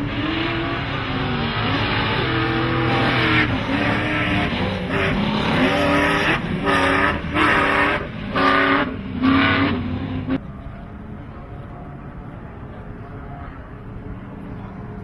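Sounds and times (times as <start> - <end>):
truck engine revving: 0.0 - 10.5.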